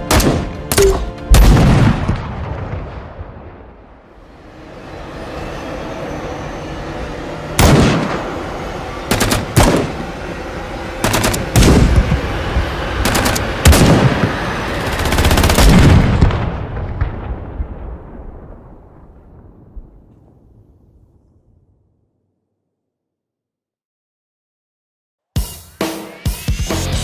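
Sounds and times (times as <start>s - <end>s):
low rumble: 1.3s - 22.1s.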